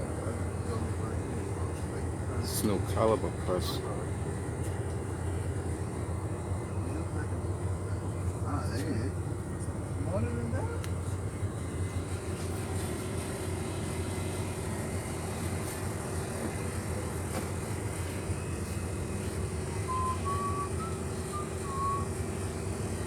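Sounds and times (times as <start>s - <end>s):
vehicle engine idling: 0.0s - 23.0s
high whistled notes: 19.8s - 22.3s.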